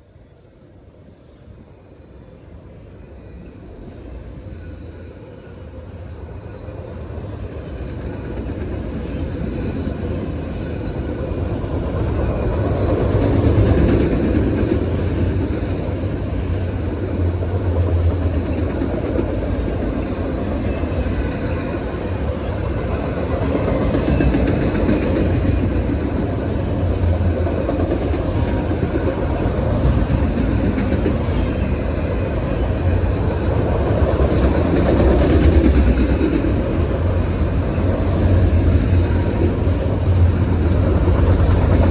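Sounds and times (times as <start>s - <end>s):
train rumbling past: 0.0s - 41.9s
wheels clattering on rail joints: 7.8s - 41.9s.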